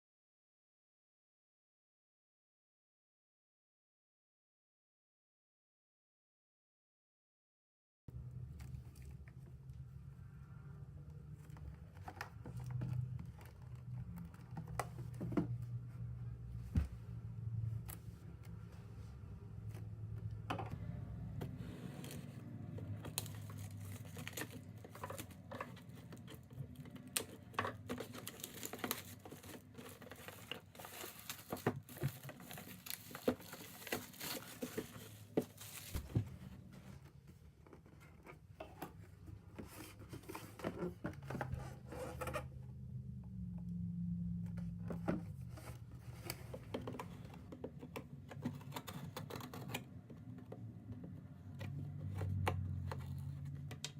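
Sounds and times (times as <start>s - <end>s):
low steady hum: 8.1s - 53.9s
packaging crinkling and tearing: 22.9s - 36.1s.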